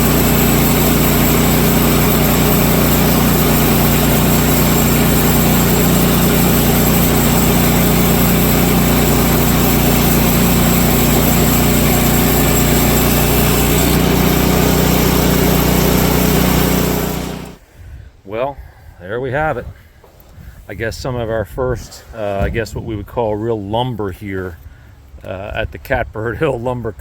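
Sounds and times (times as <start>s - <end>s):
gasoline engine running: 0.0s - 17.6s.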